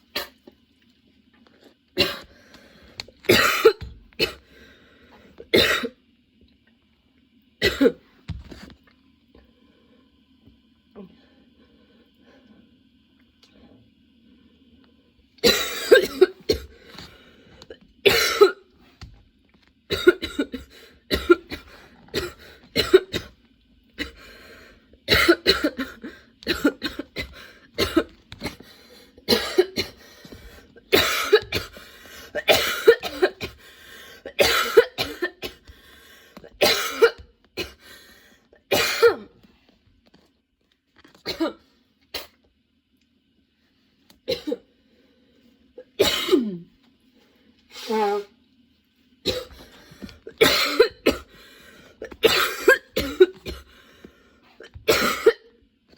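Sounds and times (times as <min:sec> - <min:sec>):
woman coughing: 0:03.3 - 0:04.4, 0:05.5 - 0:06.0, 0:07.6 - 0:08.0, 0:15.4 - 0:16.7, 0:18.0 - 0:18.6, 0:19.9 - 0:23.3, 0:25.1 - 0:28.1, 0:29.3 - 0:30.0, 0:30.9 - 0:33.6, 0:34.2 - 0:35.6, 0:36.6 - 0:37.8, 0:38.7 - 0:39.3, 0:41.3 - 0:41.6, 0:44.3 - 0:44.7, 0:46.0 - 0:46.7, 0:50.3 - 0:51.3, 0:52.0 - 0:53.7, 0:54.8 - 0:55.5.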